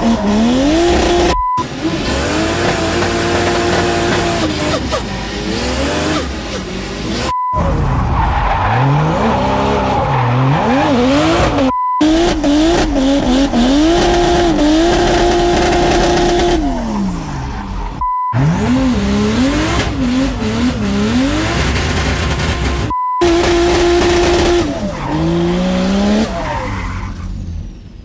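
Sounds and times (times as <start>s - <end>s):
race car engine revving: 0.0s - 28.0s
brief beep: 1.3s - 1.6s, 7.2s - 7.7s, 18.0s - 18.4s, 22.9s - 23.4s
tyre squeal: 23.2s - 27.6s.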